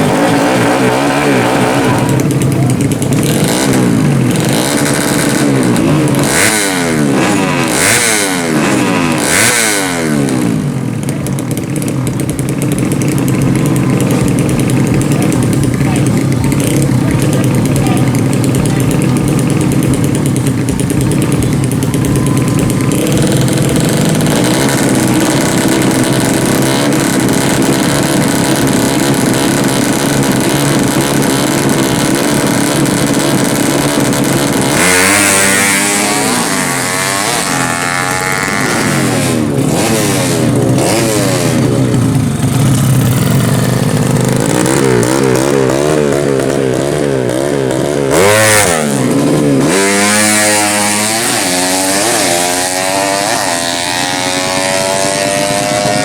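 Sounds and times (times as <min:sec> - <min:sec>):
motorcycle engines revving: 0:00.0 - 0:56.0.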